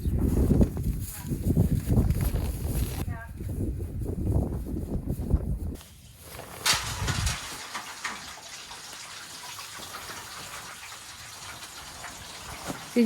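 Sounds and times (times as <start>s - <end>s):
water gushing into a tub: 6.6s - 13.0s.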